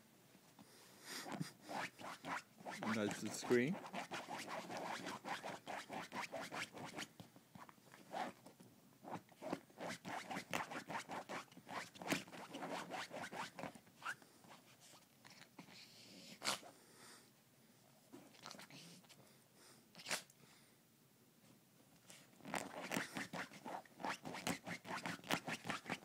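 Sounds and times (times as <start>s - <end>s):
puppy scraping upholstery: 22.4s - 26.0s.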